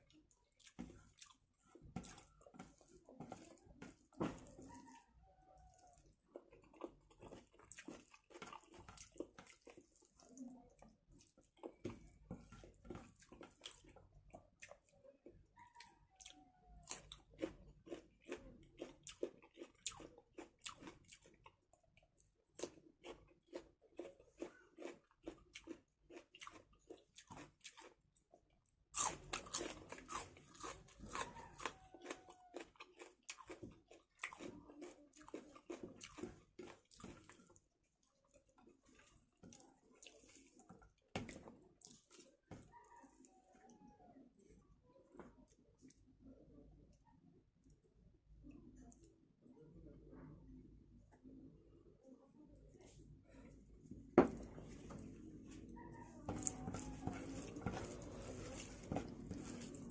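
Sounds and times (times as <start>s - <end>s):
person chewing and crunching: 0.0s - 4.7s, 5.6s - 43.3s, 54.3s - 59.9s.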